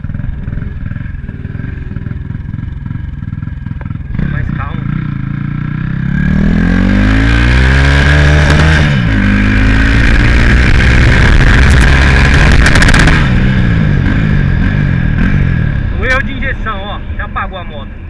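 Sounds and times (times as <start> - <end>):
motorcycle engine accelerating: 0.0 - 17.4
wind noise: 8.5 - 16.0.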